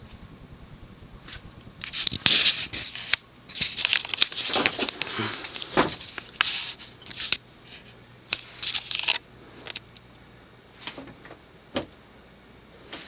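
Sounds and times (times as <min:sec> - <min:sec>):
rustling handling noise: 0:01.2 - 0:09.9.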